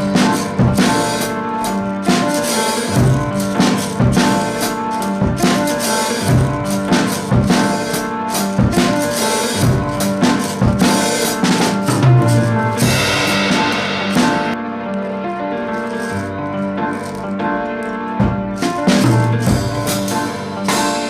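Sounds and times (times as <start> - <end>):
drum kit beat: 0.0 - 14.6, 15.3 - 21.0
sustained instrumental notes: 0.0 - 21.0.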